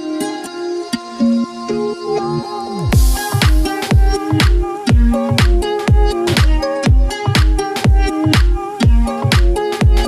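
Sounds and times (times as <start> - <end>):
held synth melody notes: 0.0 - 10.0
deep kick drum: 2.9 - 10.0.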